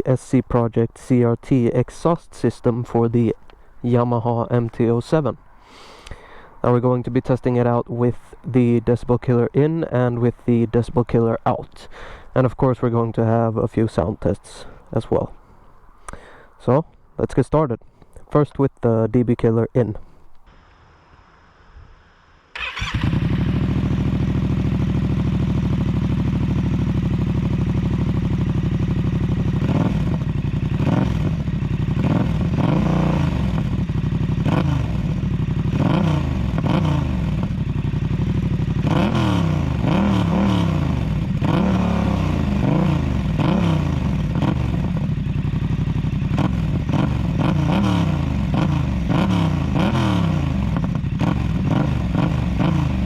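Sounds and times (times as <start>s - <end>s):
motorcycle engine idling and revving: 22.0s - 53.0s.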